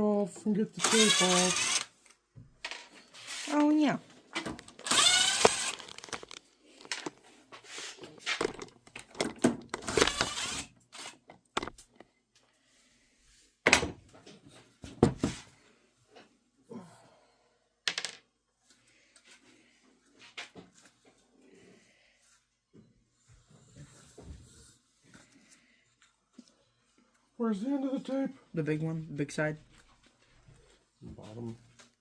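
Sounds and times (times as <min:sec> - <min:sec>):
tape peeling off plastic: 0:04.8 - 0:06.4.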